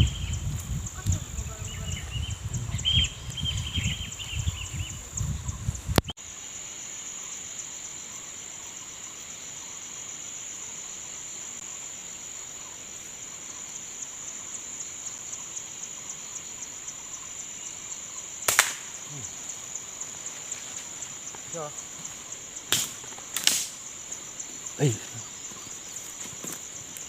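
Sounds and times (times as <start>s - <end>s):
insects chirring: 0.0s - 27.0s
sharp crack: 18.4s - 19.2s, 22.7s - 23.8s.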